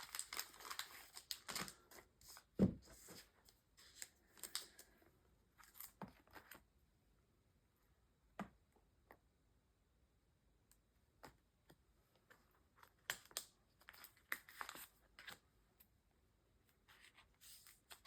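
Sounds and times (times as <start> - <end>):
trading cards rustling: 0.0 - 4.9.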